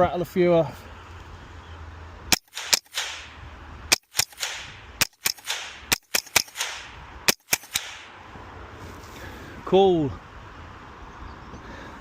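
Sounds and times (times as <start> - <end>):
rifle shots cracking: 2.3 - 8.2.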